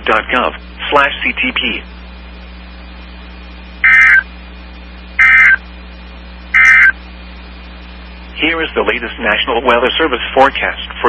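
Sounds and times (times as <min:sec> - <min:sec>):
radio hum and hiss: 0:00.0 - 0:11.0
warbling two-tone data squeal: 0:03.8 - 0:04.2, 0:05.2 - 0:05.6, 0:06.6 - 0:07.0.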